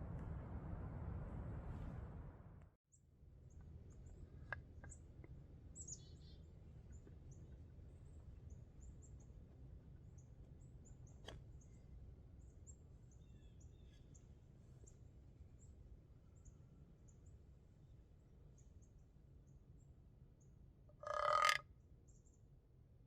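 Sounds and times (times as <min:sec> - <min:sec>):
high-pitched bird chirps: 0:21.0 - 0:21.6.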